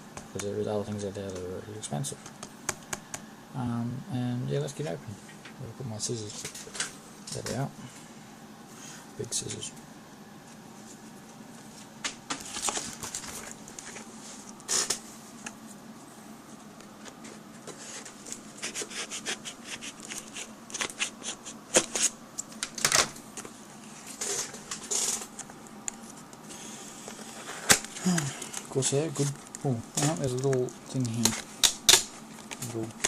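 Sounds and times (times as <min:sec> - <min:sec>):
packaging crackling: 0:27.5 - 0:33.0.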